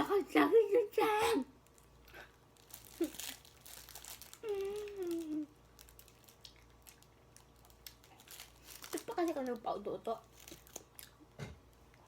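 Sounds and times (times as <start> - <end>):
faint clicks and crinkles: 1.6 - 12.0
woman whimpering moan: 4.4 - 5.5.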